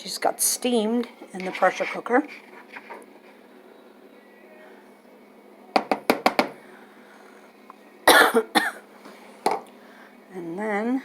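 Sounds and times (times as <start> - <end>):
person coughing: 8.1 - 8.8.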